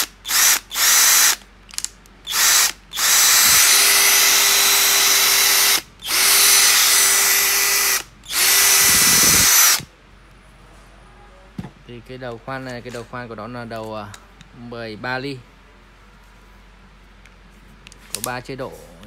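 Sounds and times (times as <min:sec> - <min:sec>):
cordless drill whining: 0:00.0 - 0:01.4, 0:02.2 - 0:09.9.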